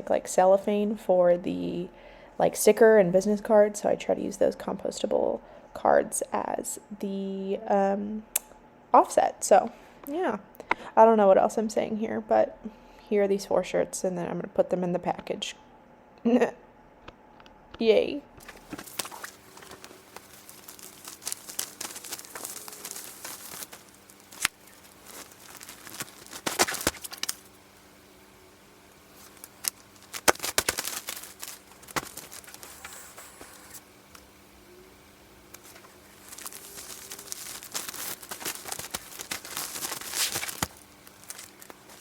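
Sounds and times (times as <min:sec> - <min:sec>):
mailer bags crinkling and rustling: 0:18.4 - 0:27.6, 0:29.0 - 0:33.8, 0:35.6 - 0:42.0.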